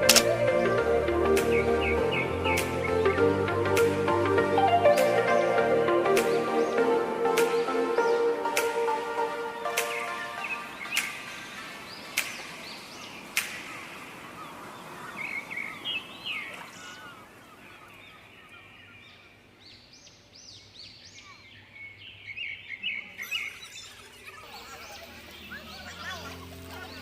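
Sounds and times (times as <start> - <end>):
birds chirping: 0.0 - 27.0
steady background hiss: 0.0 - 27.0
sharp click: 0.1 - 0.3.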